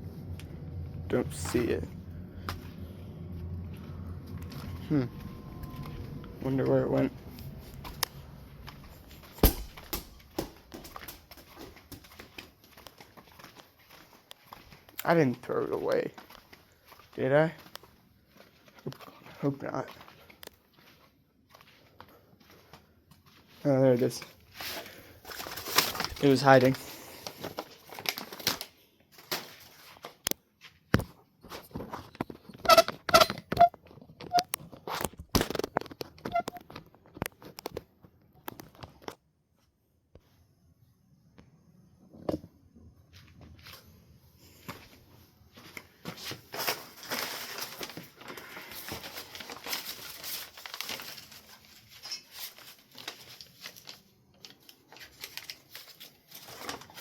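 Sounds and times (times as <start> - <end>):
packing wrap crinkling: 24.1 - 30.2, 34.7 - 37.8, 45.8 - 57.0.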